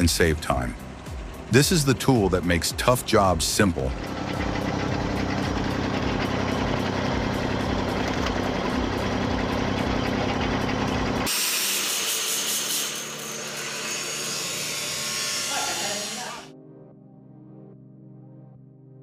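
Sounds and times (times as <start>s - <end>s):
tractor engine running: 0.0s - 11.3s
high hissing machine noise: 0.0s - 16.5s.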